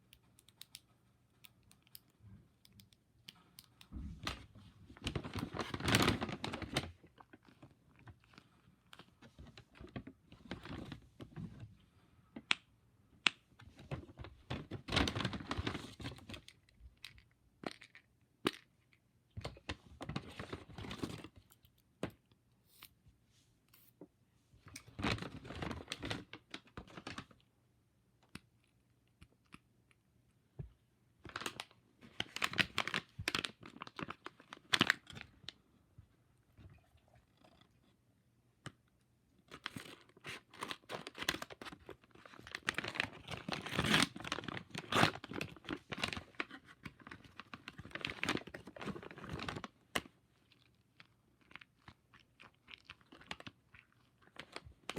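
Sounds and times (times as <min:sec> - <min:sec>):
packaging crinkling: 0:39.5 - 0:49.7.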